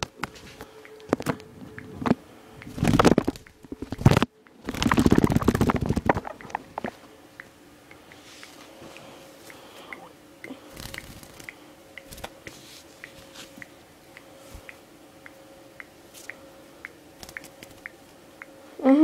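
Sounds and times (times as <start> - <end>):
faint steady hum: 0.0 - 19.0
budgies crunching seed: 2.0 - 7.0
short high ticks: 9.5 - 18.6.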